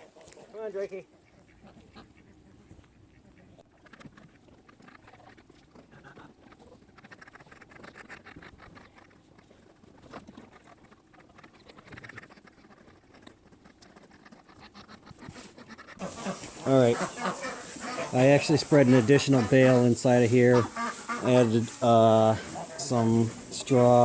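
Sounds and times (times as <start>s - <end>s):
pattering and rustling in straw: 15.2s - 24.0s.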